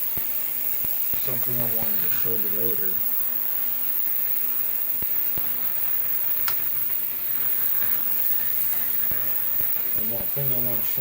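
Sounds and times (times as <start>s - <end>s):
background hiss: 0.0s - 11.0s
electrical mains hum: 0.0s - 11.0s.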